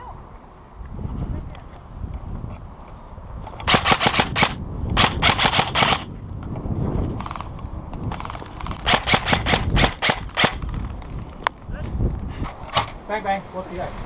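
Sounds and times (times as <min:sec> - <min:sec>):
airsoft rifle bursts: 0:03.7 - 0:06.1, 0:08.2 - 0:10.8.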